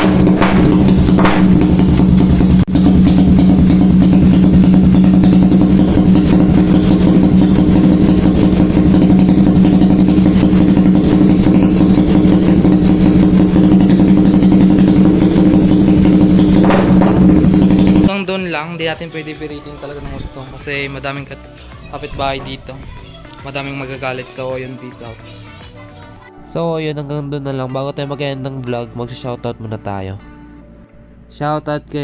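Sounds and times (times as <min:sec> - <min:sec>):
motorcycle engine idling: 0:00.0 - 0:18.2.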